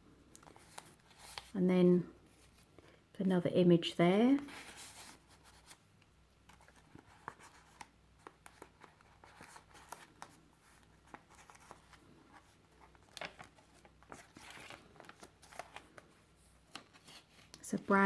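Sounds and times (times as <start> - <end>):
paper pages rustling and turning: 0.3 - 1.6, 2.3 - 2.7, 4.3 - 5.8, 6.4 - 18.0.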